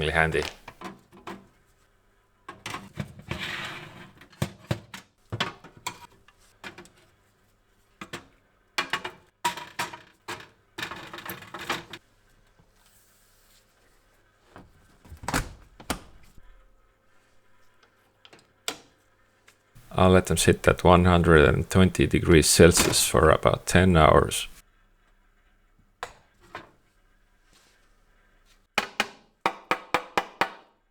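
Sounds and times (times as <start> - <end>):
faint low hum: 19.8 - 24.6.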